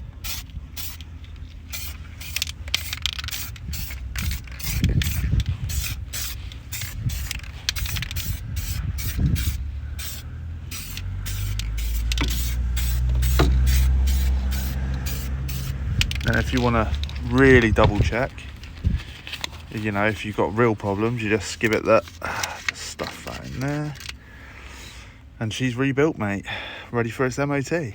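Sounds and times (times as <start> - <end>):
low rumble: 0.0 - 21.2
aerosol spray can hissing: 0.2 - 1.0, 1.7 - 17.2.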